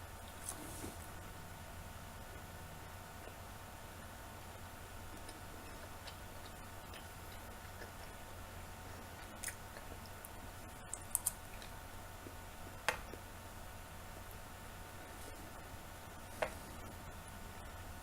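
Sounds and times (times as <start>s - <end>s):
steady low hum: 0.0s - 18.0s
faint chewing: 0.2s - 1.2s, 5.0s - 13.3s.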